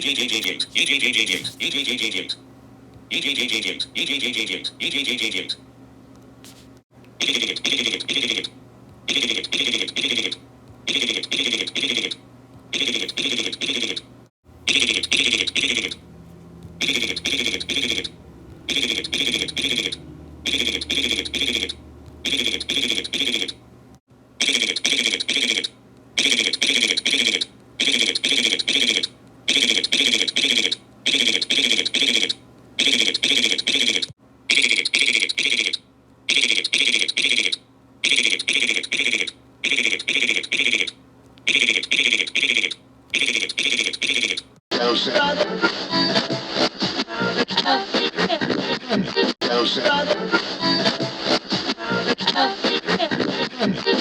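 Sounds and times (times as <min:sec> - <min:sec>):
low steady hum: 0:00.0 - 0:24.4.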